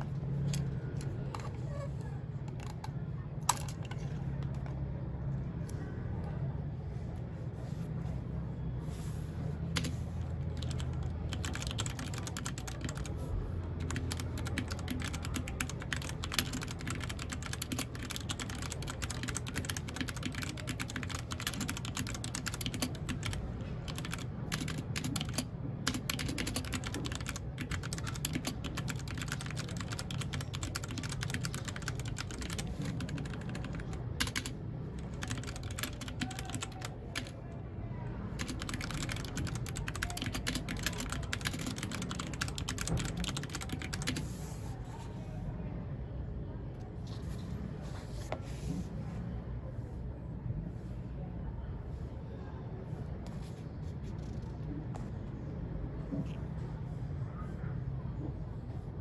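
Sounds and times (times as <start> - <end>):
low background hum: 0.0 - 59.0
typing on mechanical keyboard: 2.5 - 4.7, 9.7 - 37.4, 38.3 - 44.6.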